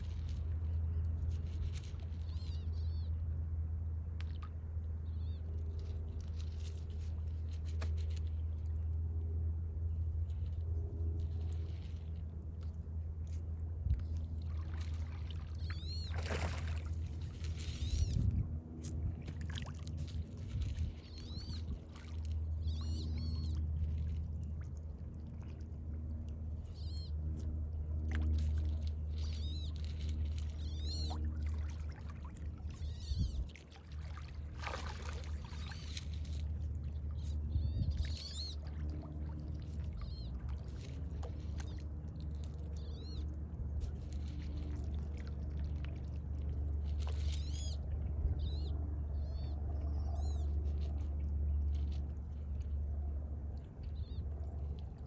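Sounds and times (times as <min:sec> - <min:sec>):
water splashing and lapping: 0:00.0 - 0:02.9, 0:05.2 - 0:08.8, 0:10.2 - 0:55.0
steady low rumble: 0:00.0 - 0:55.0
birds chirping: 0:22.6 - 0:23.6.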